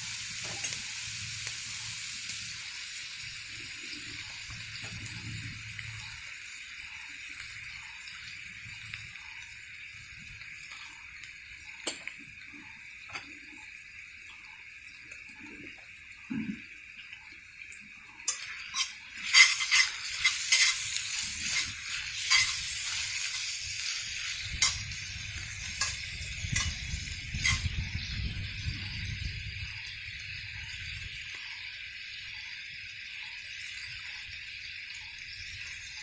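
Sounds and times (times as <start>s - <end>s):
food sizzling in a pan: 0.0s - 36.0s
utensil clinking on pan: 18.3s - 23.6s, 24.6s - 24.9s.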